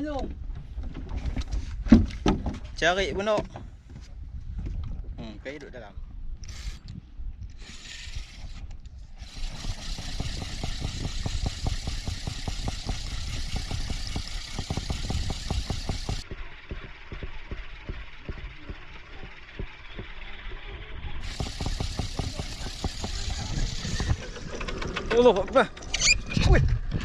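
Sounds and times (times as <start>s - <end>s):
boat engine running: 9.2s - 25.8s.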